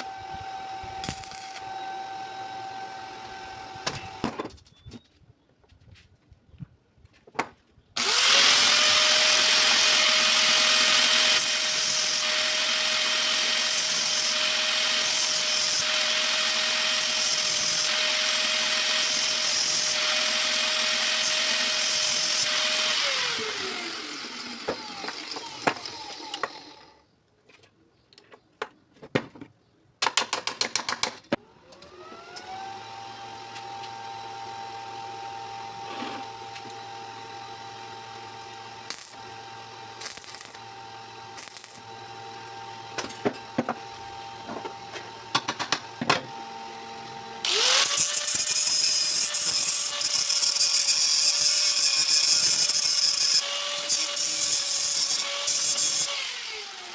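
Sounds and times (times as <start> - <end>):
power tool motor running: 8.0 - 27.0, 31.7 - 45.4, 46.3 - 56.9.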